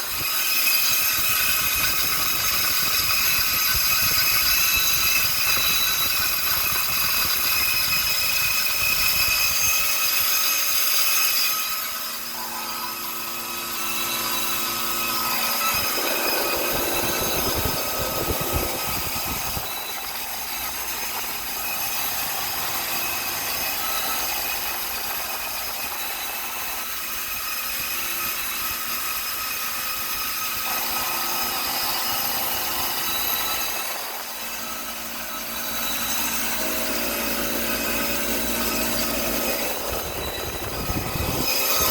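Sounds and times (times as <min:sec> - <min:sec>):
compressor humming and whining: 0:11.9 - 0:41.9.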